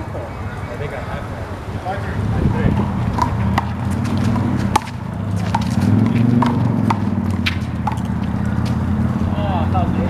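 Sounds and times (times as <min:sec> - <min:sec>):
ball slapping against wall: 0:03.1 - 0:08.8.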